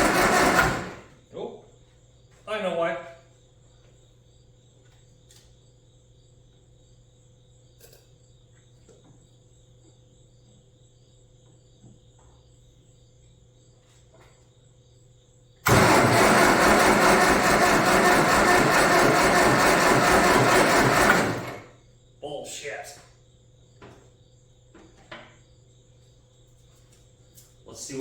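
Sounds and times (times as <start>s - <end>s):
loud harsh mechanical noise: 0.0s - 1.2s, 15.6s - 21.7s
crickets chirping: 1.1s - 15.6s, 21.7s - 28.0s.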